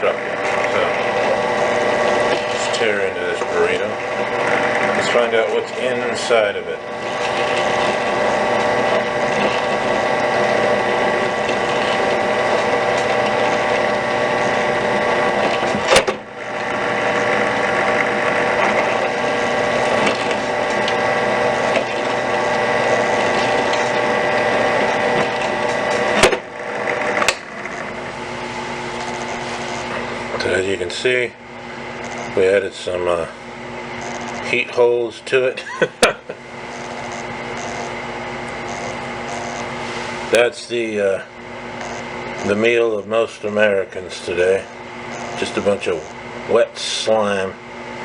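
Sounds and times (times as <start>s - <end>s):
drill bit drilling into food: 0.0s - 28.2s, 28.8s - 30.5s, 31.9s - 32.6s, 33.9s - 35.0s, 36.6s - 40.4s, 41.6s - 42.6s, 44.3s - 46.3s
drill press motor running: 0.0s - 48.0s.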